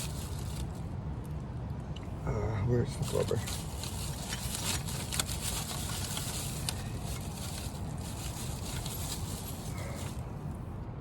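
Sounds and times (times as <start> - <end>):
steady background hiss: 0.0 - 11.0.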